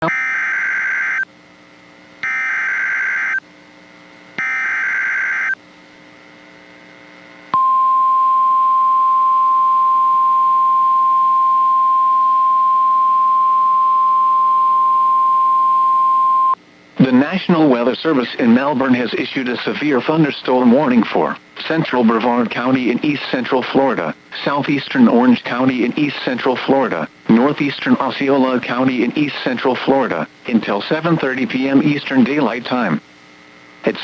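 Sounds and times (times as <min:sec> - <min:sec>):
steady warning alarm tone: 0:00.0 - 0:01.3, 0:02.2 - 0:03.4, 0:04.4 - 0:05.6
warbling digital data bursts: 0:04.4 - 0:05.6.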